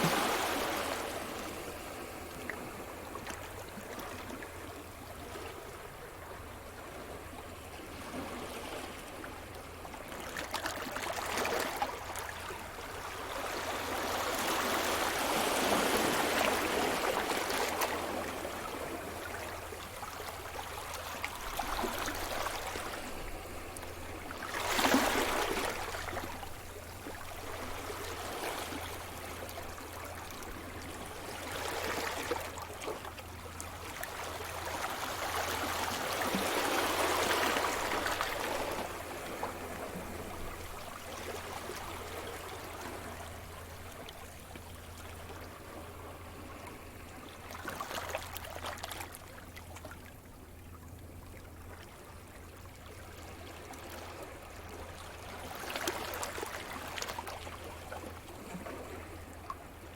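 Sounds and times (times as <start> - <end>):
waves washing onto shore: 0.0 - 4.7.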